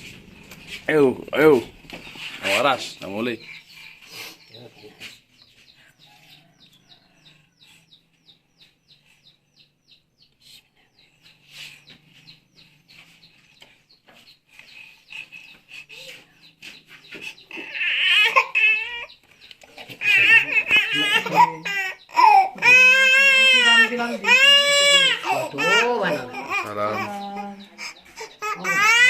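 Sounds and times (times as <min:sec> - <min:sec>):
baby crying: 0:17.5 - 0:19.1, 0:20.0 - 0:29.0.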